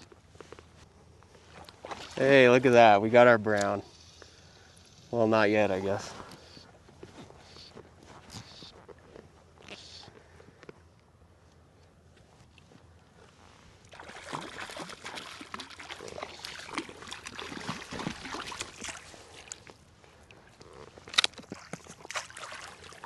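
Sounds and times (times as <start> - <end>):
water splashing and sloshing: 1.3 - 3.0, 12.4 - 23.0.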